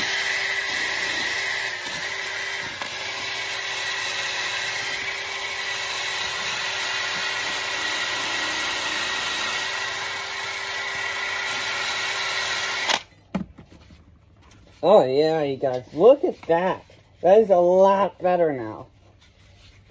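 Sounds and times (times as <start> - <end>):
power tool grinding metal: 0.0 - 13.0.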